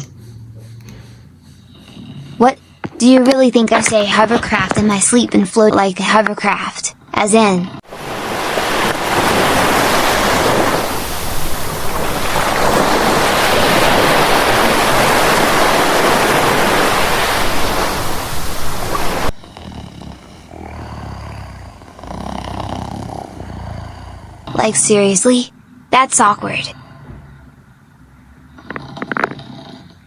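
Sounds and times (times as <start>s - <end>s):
rushing roar snore effect: 7.4s - 25.0s, 28.5s - 30.0s.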